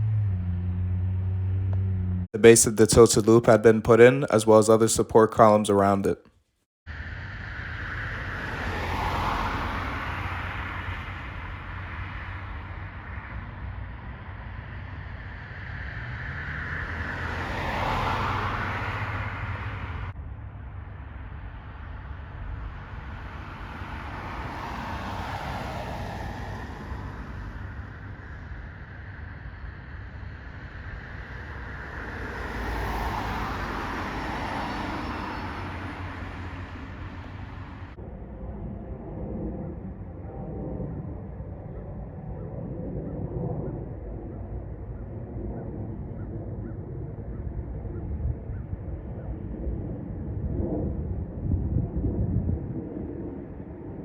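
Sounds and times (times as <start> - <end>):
cars passing by: 0.0 - 6.2, 6.9 - 38.0
low traffic rumble: 0.0 - 6.2, 6.9 - 54.0.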